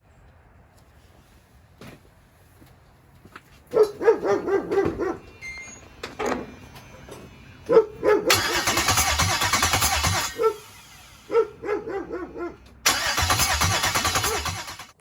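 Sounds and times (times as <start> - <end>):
dog barking: 3.7 - 5.3, 7.7 - 8.7, 10.2 - 10.7, 11.3 - 12.6.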